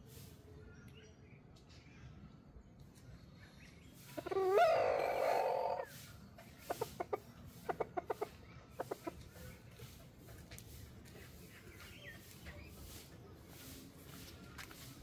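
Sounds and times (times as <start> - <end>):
chicken clucking: 4.1 - 13.8
rooster crowing: 4.4 - 5.8.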